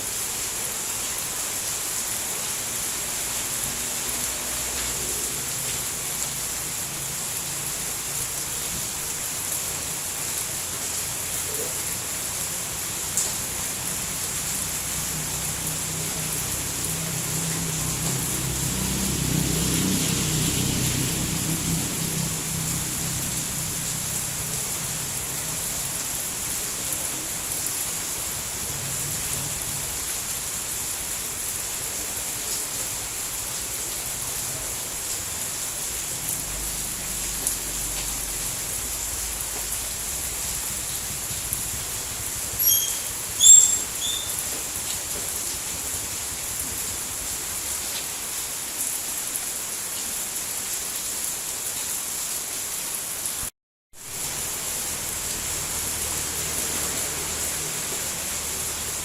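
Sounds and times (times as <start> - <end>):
steady rain hiss: 0.0 - 59.0
short high chirps: 42.6 - 44.4.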